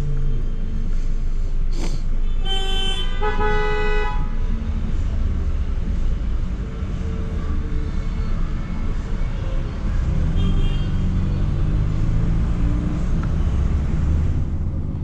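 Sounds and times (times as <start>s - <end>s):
traffic rumble: 0.0s - 15.0s
car horns honking: 2.3s - 4.3s.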